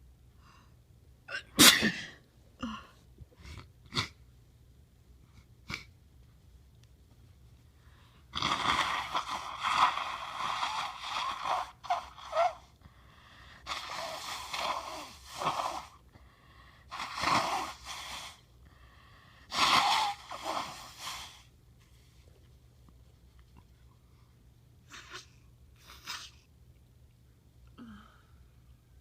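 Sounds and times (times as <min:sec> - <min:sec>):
person blowing nose: 0:08.4 - 0:12.7, 0:13.6 - 0:16.0, 0:16.9 - 0:18.5, 0:19.4 - 0:21.5.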